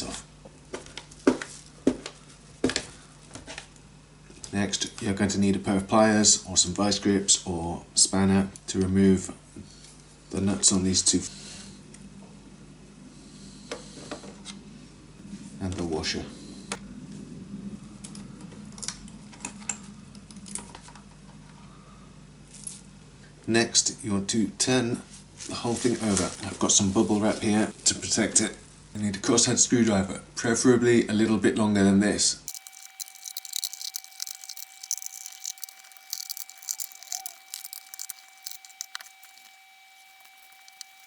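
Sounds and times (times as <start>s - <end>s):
small metal parts clicking: 32.5s - 41.0s.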